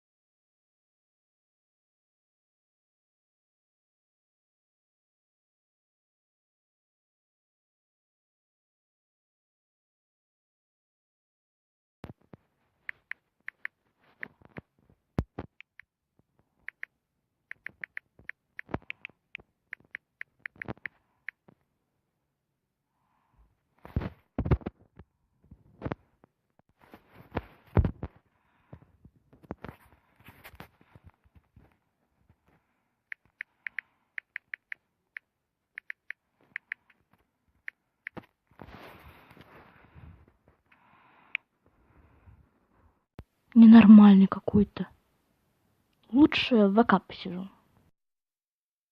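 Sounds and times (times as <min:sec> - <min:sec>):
light quick clicks and taps: 0:17.5 - 0:21.6.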